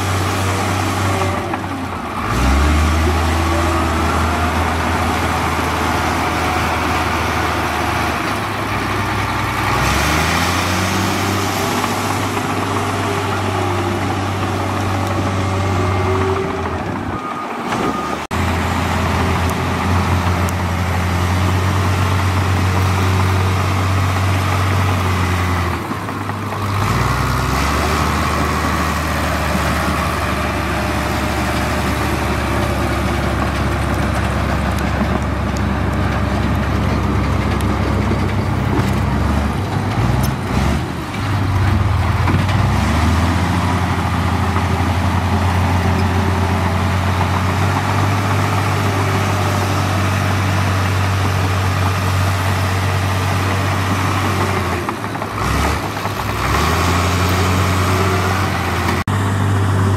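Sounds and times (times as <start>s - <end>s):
heavy machine diesel engine: 0.0s - 59.9s.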